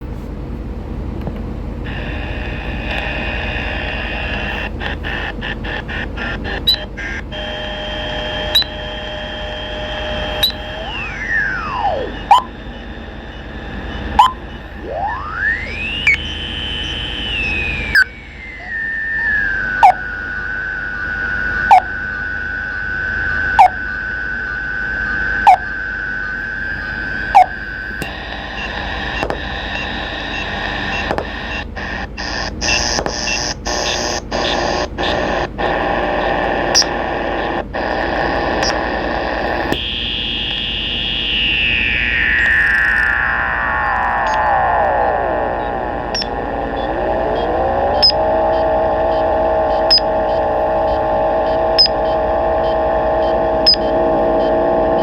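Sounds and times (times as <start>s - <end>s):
radio static hiss: 1.8s - 55.0s
gliding whistling tones: 8.4s - 28.0s, 39.7s - 45.5s
sharp clicks: 27.4s - 31.6s.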